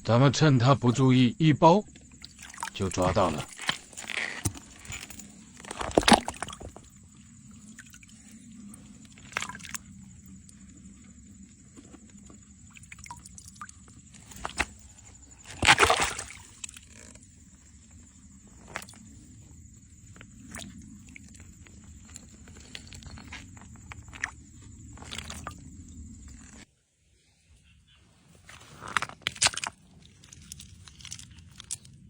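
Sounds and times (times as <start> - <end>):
stream water sloshing: 2.0 - 26.5
hands rummaging among stones: 2.6 - 7.5, 28.5 - 32.0.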